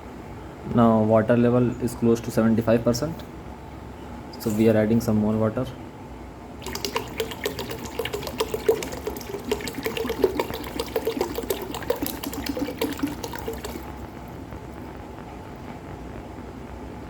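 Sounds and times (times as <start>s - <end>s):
water pouring into container: 6.6s - 14.3s.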